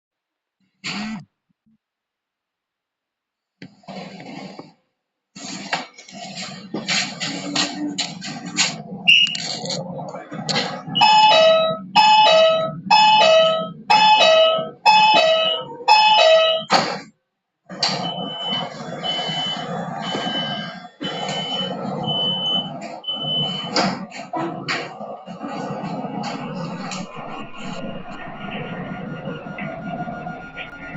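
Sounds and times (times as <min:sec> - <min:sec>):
train rumble: 0:05.5 - 0:16.6, 0:18.0 - 0:30.9
high beep: 0:10.9 - 0:16.8.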